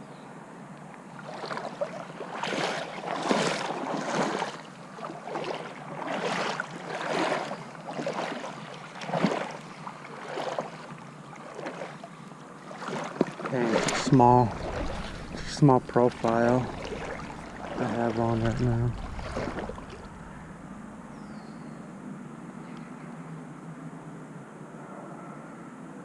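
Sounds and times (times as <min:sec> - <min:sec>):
water sloshing: 0:01.0 - 0:21.1
low steady hiss: 0:13.5 - 0:25.8.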